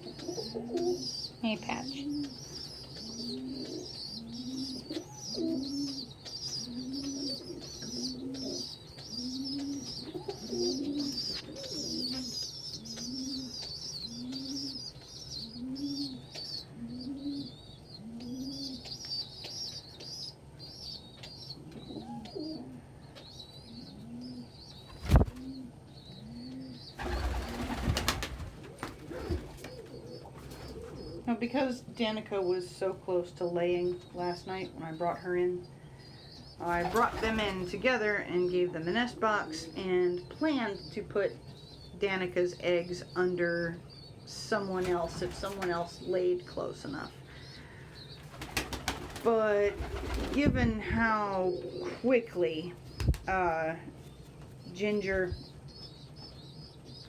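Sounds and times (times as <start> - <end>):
pigeons cooing: 0.0 - 19.6, 21.3 - 31.5, 34.5 - 40.9, 47.0 - 52.4.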